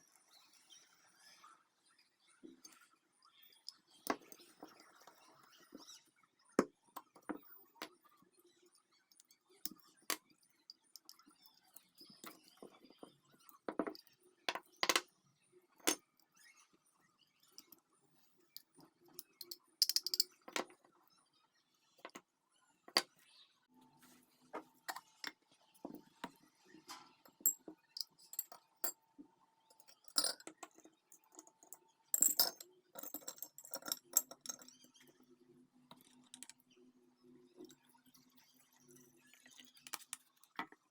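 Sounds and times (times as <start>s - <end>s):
small metal parts clinking: 19.2s - 20.7s, 27.3s - 29.0s, 29.7s - 34.8s.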